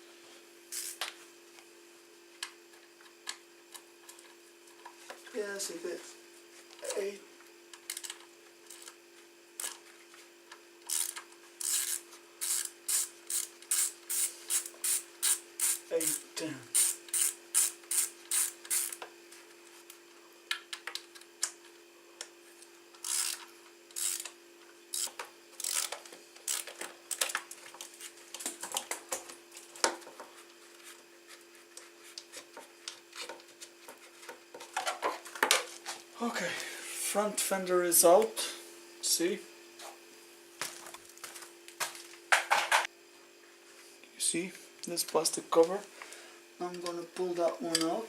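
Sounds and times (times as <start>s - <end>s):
ratchet wrench strokes: 0.7s - 1.0s, 10.9s - 19.0s, 23.0s - 24.3s, 24.9s - 26.7s.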